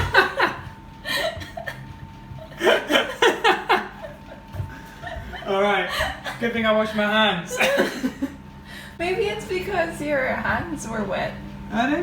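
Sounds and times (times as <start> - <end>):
people laughing: 0.0 - 8.4.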